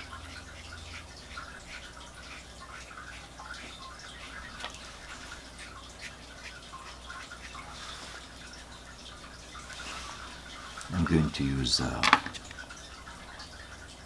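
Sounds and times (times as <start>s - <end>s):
brush strokes on paper: 0.9s - 8.6s, 9.4s - 11.4s.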